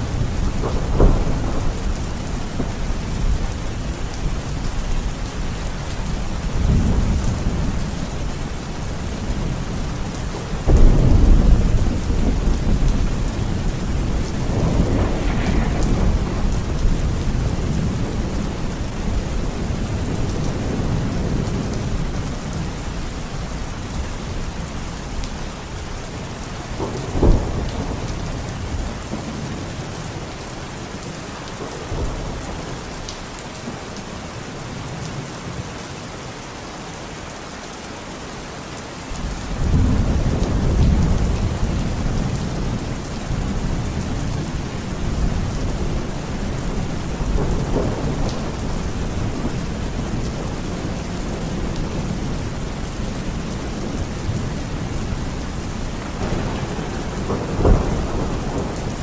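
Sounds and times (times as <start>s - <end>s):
rolling thunder: 0.0s - 23.0s, 26.7s - 30.4s, 39.2s - 59.0s
steady rain falling: 0.0s - 59.0s
sharp thunder clap: 0.6s - 3.4s, 10.6s - 18.5s, 56.2s - 59.0s.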